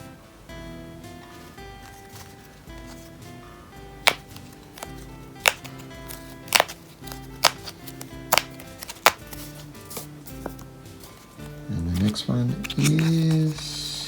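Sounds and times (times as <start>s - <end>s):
acoustic guitar music: 0.0s - 14.0s
foil pack crackling: 11.4s - 14.0s.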